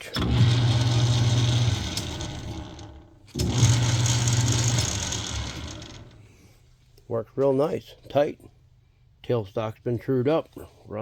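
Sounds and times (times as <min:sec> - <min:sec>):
metal lathe motor running: 0:00.2 - 0:06.2.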